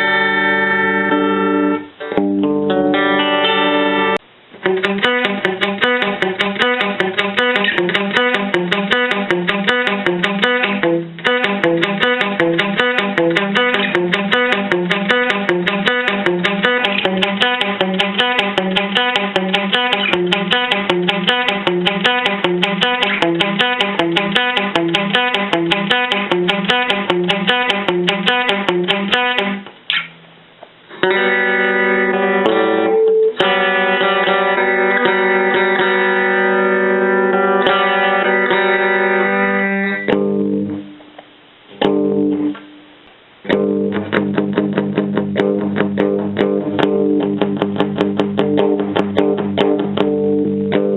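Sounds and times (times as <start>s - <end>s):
electric guitar playing: 0.0s - 50.9s.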